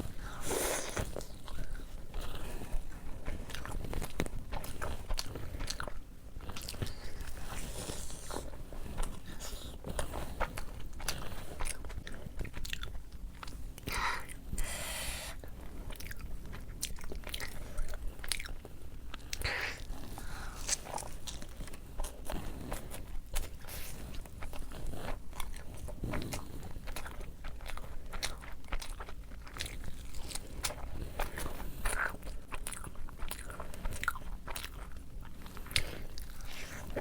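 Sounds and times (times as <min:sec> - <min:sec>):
person chewing food: 0:00.0 - 0:37.0.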